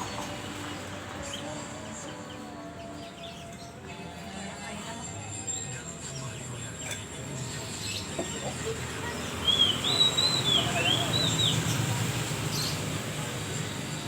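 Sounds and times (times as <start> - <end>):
bird singing whistled notes: 9.2 - 13.0.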